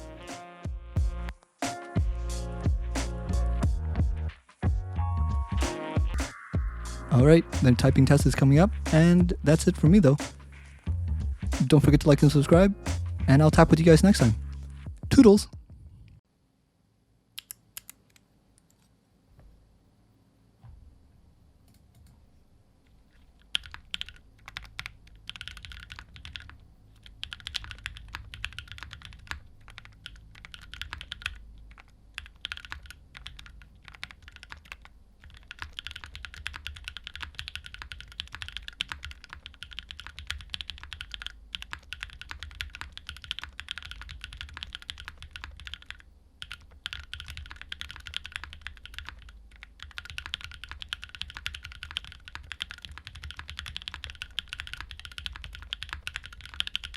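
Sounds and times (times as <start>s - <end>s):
fast typing on mechanical keyboard: 23.2s - 56.9s.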